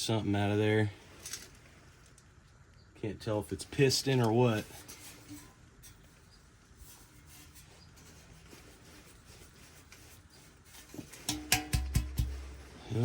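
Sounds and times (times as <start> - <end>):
light clicks of parts handled: 1.2 - 2.8
faint rubbing of engine parts: 3.2 - 13.0.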